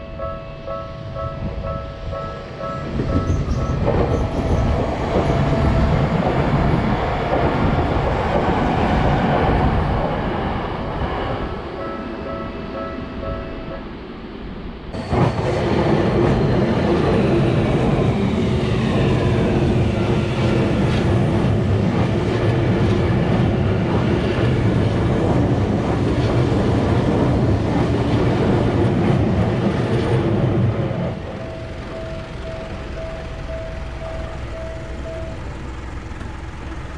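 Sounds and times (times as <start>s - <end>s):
train rumbling past: 0.0s - 36.9s
high tone sliding downward: 31.0s - 36.7s.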